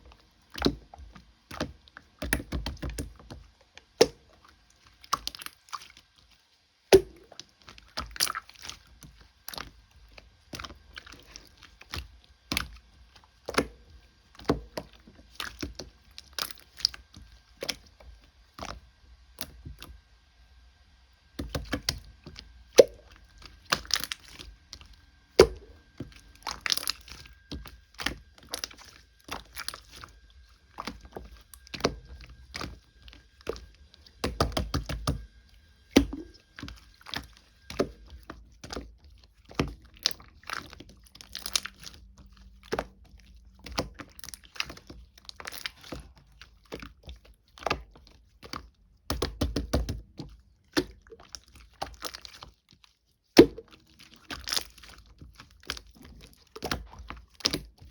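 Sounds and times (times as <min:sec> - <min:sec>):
slime crackling and popping: 0:23.6 - 0:30.2, 0:39.6 - 0:43.0.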